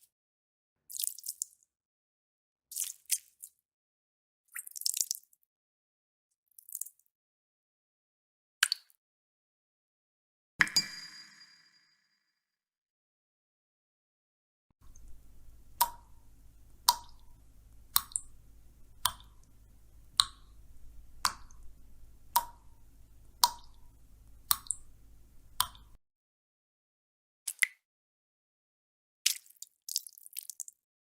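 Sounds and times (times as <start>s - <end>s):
drops plinking into liquid: 14.8s - 26.0s
faint low hum: 14.8s - 26.0s.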